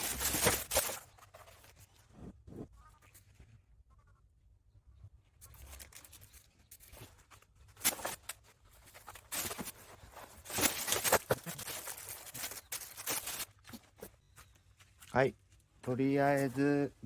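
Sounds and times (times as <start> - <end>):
plastic crinkling and rustling: 0.0 - 2.1, 5.4 - 15.1.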